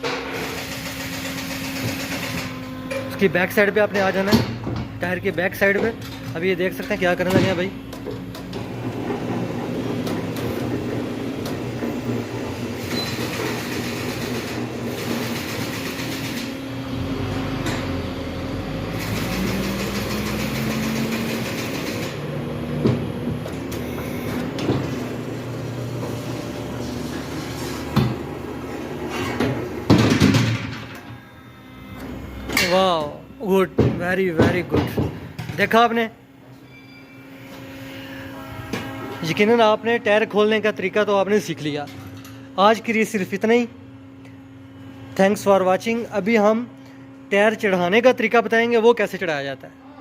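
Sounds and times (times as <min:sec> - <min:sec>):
tyre changer machine drone: 0:00.0 - 0:50.0.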